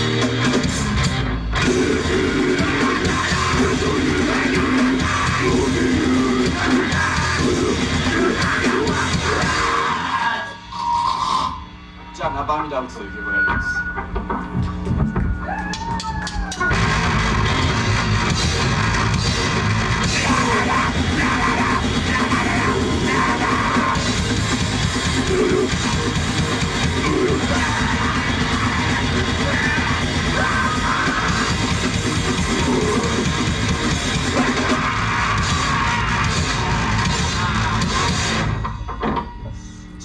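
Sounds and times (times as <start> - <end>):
fast drums: 0.0 - 10.2, 14.9 - 38.6
distorted guitar and bass: 0.0 - 40.0
yelled vocals: 1.6 - 10.7, 16.7 - 38.5.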